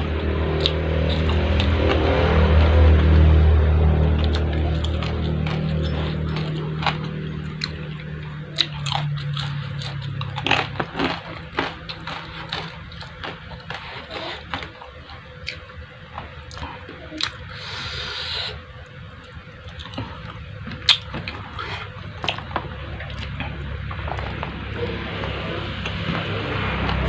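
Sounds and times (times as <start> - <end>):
low hum: 0.0 - 27.0
wet chewing and crunching: 0.0 - 27.0.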